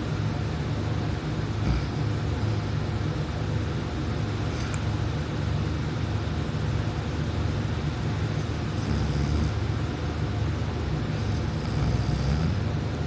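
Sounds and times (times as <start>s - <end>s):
person snoring: 1.6s - 2.7s, 8.7s - 9.6s, 11.2s - 12.7s.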